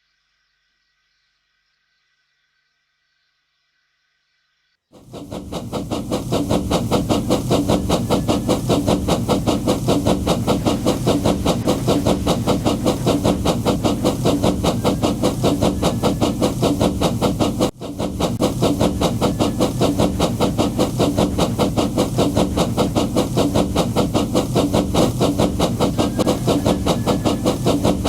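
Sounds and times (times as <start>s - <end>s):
fast repeating pulsing sound: 5.0s - 28.0s.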